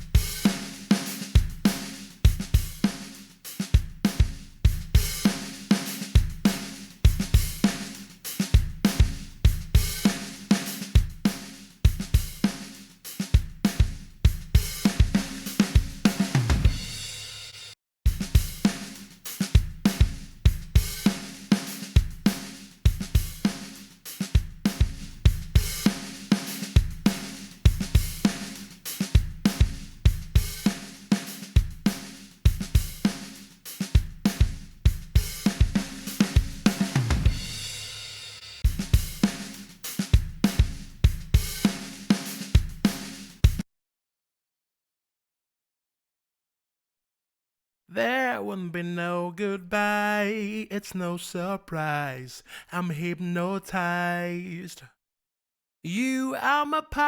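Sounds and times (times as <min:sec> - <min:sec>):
music with drum-kit beat: 0:00.0 - 0:43.6.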